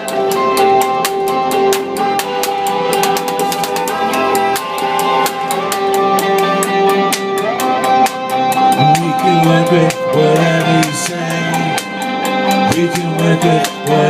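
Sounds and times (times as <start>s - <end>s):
drum strikes: 0.0s - 7.5s
guitars playing melodic notes: 0.0s - 14.0s.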